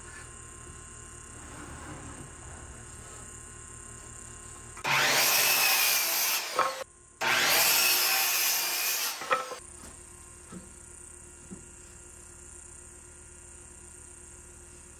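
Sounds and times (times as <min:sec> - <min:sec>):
power saw cutting wood: 0:04.8 - 0:09.6.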